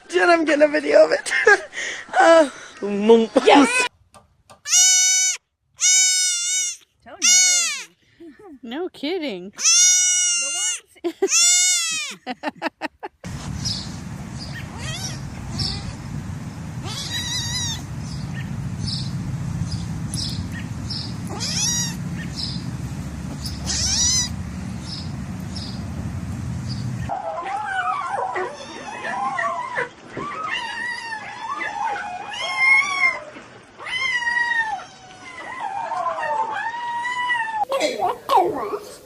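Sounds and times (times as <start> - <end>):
low rumble: 13.3 - 27.1
cat yowling: 14.5 - 16.0, 16.8 - 18.5, 21.3 - 22.3, 23.6 - 24.3, 27.2 - 33.2, 33.8 - 37.7.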